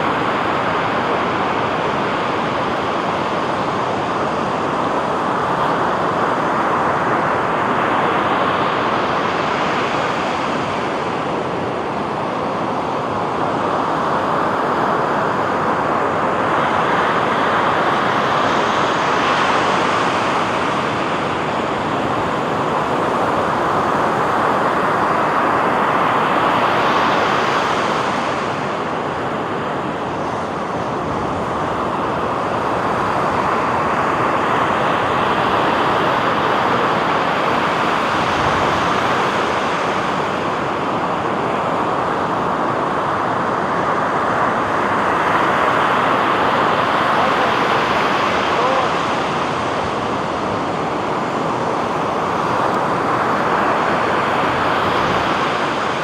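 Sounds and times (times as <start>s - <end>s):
surf breaking on beach: 11.8s - 56.0s.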